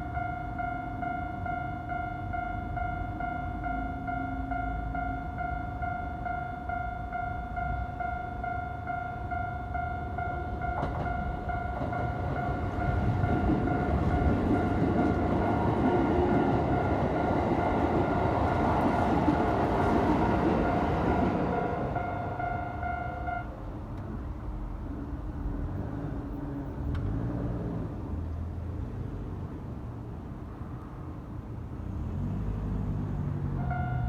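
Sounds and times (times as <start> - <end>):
crossing warning bell ringing: 0.0 - 23.8, 33.4 - 34.0.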